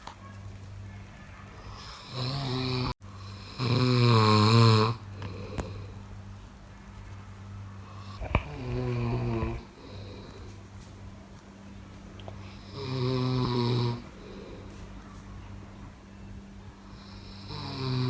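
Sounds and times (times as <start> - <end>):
person snoring: 1.8 - 6.0, 8.0 - 10.6, 12.5 - 14.7, 17.0 - 18.0
quiet breathing: 4.9 - 6.4, 7.8 - 11.2, 12.3 - 15.9, 16.7 - 18.0.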